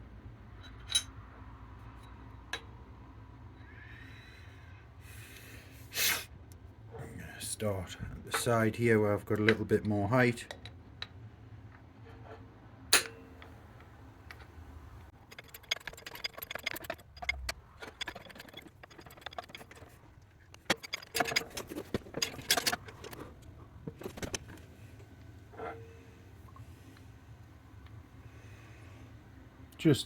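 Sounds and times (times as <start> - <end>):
metallic clicking and rattling: 14.3 - 24.6.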